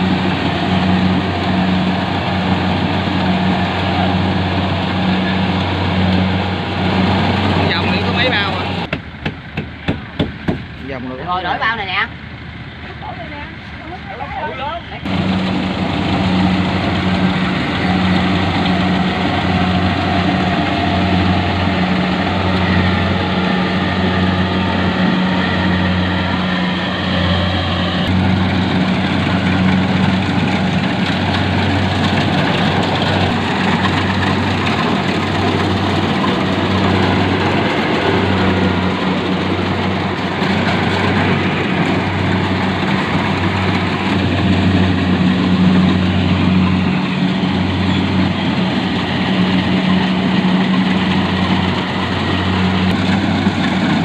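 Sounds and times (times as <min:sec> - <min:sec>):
harvester engine hum: 0:00.0 - 0:54.0.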